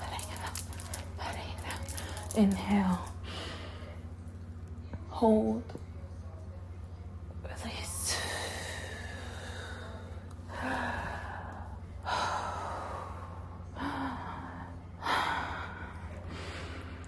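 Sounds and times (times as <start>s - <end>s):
steady low hum: 0.0s - 17.0s
woman breathing deeply: 8.2s - 17.0s.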